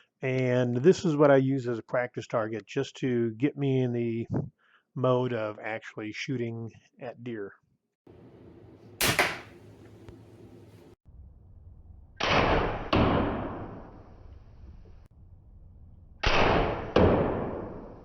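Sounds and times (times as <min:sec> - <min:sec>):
bolt striking target: 0:09.0 - 0:09.7
crossbow discharging crack: 0:09.0 - 0:10.9.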